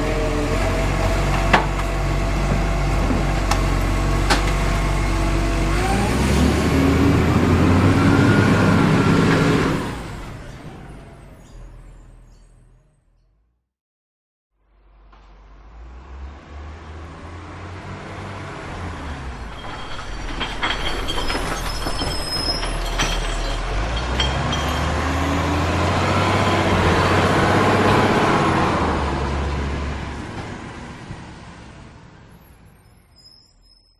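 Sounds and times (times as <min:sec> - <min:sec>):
diesel truck driving past: 0:00.0 - 0:13.4, 0:14.6 - 0:21.8, 0:22.4 - 0:33.9
high squeals: 0:19.4 - 0:23.7, 0:32.6 - 0:33.9.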